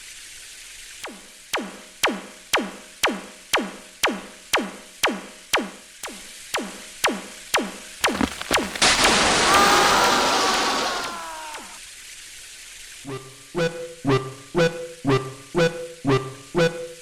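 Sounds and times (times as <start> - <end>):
synthesized kick drum beat: 1.0 - 10.1.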